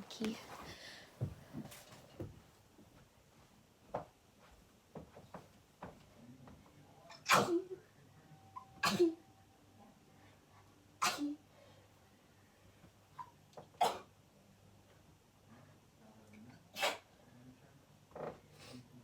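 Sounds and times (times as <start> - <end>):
person sneezing: 7.3 - 7.7, 8.8 - 9.2, 11.0 - 11.4, 13.8 - 14.1, 16.8 - 17.1.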